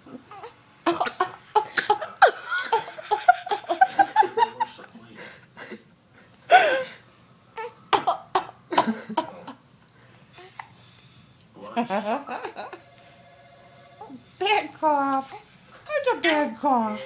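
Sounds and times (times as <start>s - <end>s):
person coughing: 8.0s - 9.4s.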